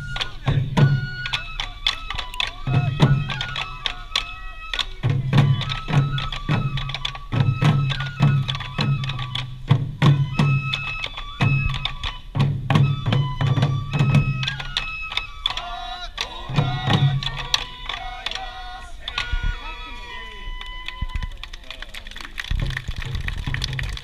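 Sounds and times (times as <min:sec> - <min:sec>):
sharp clicking strikes: 0:00.0 - 0:12.2
taiko drums: 0:00.0 - 0:21.3
bamboo flute melody: 0:00.0 - 0:22.1.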